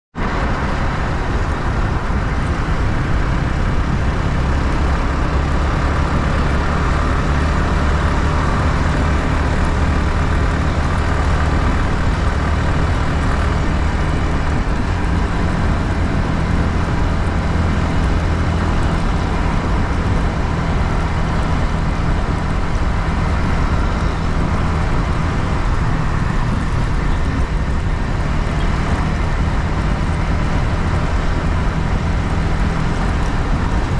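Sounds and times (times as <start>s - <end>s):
wind and road noise: 0.1s - 33.9s
motorcycle engine running: 0.2s - 33.9s.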